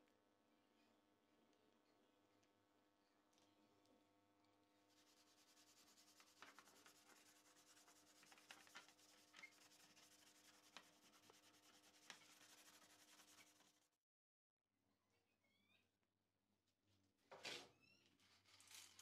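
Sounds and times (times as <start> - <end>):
scrubbing on a hard surface: 4.9 - 13.8.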